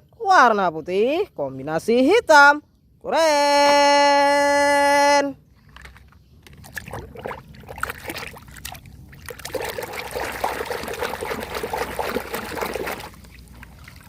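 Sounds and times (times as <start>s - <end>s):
water trickling over toy car: 6.4s - 14.0s.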